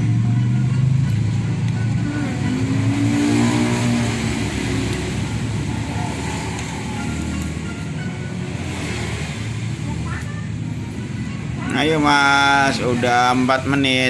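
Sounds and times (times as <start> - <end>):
engine droning: 0.0 - 14.0
second engine rising and falling: 0.0 - 14.0.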